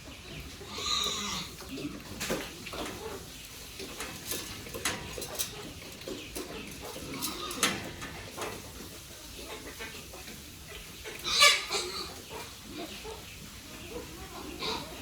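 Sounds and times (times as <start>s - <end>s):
pigs grunting: 0.2s - 3.4s, 6.6s - 8.4s, 9.4s - 15.0s
sharp clicks and knocks: 3.8s - 6.8s.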